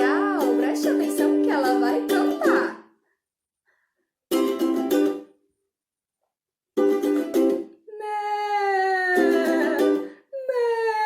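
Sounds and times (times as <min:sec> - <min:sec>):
ukulele strumming: 0:00.0 - 0:02.9, 0:04.3 - 0:05.4, 0:06.8 - 0:07.8, 0:09.2 - 0:10.2.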